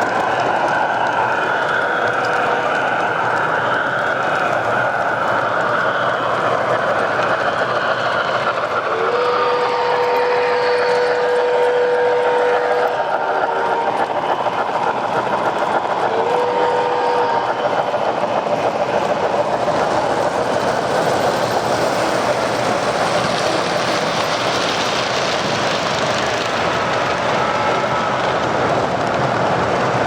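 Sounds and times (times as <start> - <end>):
model trains rattling: 0.0 - 30.0
train horn blast: 8.9 - 13.9, 16.1 - 17.6.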